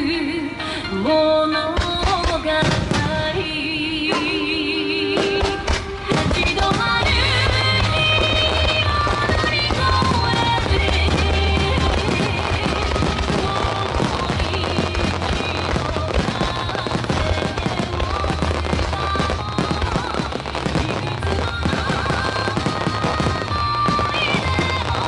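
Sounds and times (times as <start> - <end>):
fireworks bursting and crackling: 1.7 - 25.0.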